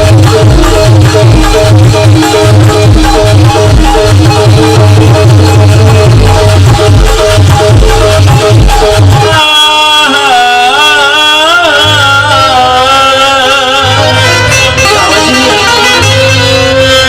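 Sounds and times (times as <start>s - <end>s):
drum beat: 0.0s - 9.4s
gliding melodic line: 13.8s - 17.0s.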